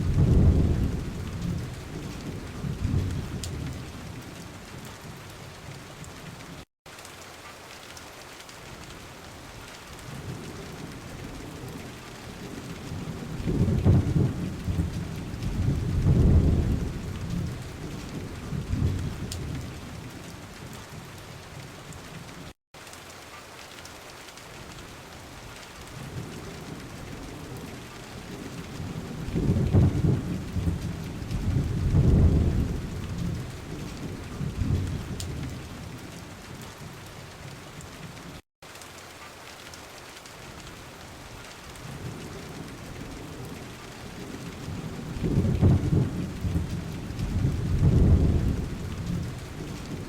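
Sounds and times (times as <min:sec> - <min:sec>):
thunder rumbling: 0:00.0 - 0:05.2, 0:10.1 - 0:20.1, 0:26.0 - 0:36.0, 0:41.8 - 0:50.0
rain falling steadily: 0:00.0 - 0:50.0.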